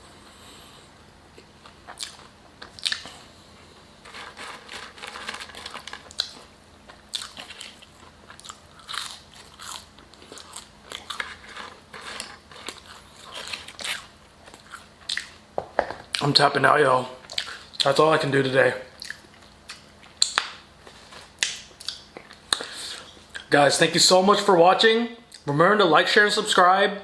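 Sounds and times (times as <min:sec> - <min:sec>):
person chewing crunchy food: 0:01.3 - 0:16.2, 0:17.2 - 0:17.9, 0:19.0 - 0:23.5.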